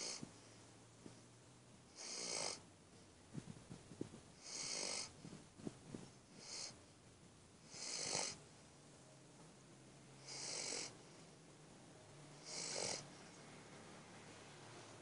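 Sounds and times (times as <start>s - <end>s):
low snoring rattles: 0.0s - 0.4s, 1.9s - 2.6s, 3.3s - 6.8s, 7.6s - 8.4s, 10.2s - 11.0s, 12.4s - 13.4s
hissing snoring breaths: 0.0s - 0.5s, 1.9s - 2.6s, 4.4s - 5.4s, 6.3s - 6.8s, 7.7s - 8.4s, 10.2s - 11.2s, 12.4s - 13.2s.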